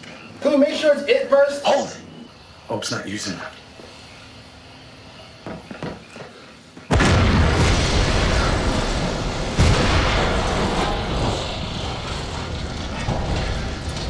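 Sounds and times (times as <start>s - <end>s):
loud rumbling explosion: 6.9s - 14.0s.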